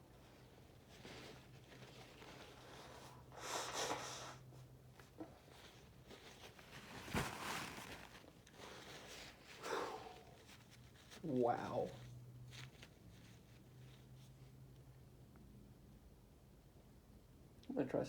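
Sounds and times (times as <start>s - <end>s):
man sniffing and breathing hard: 2.8s - 4.5s.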